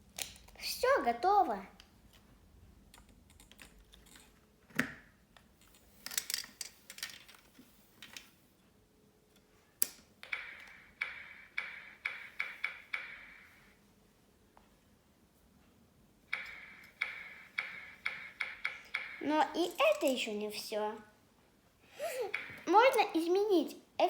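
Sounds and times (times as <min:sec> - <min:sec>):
electronic bouncing-ball clicks: 0:10.2 - 0:13.6, 0:16.3 - 0:20.0, 0:22.3 - 0:23.0
knocks and clicks: 0:10.2 - 0:13.6, 0:16.3 - 0:20.3, 0:22.2 - 0:23.0.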